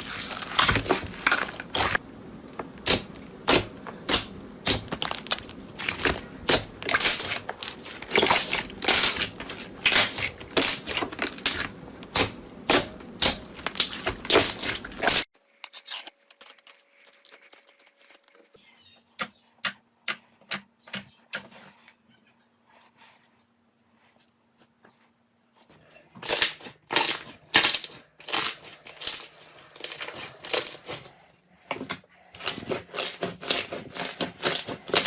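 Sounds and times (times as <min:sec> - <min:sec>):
slime crackling and popping: 0:02.6 - 0:15.2, 0:26.2 - 0:31.0.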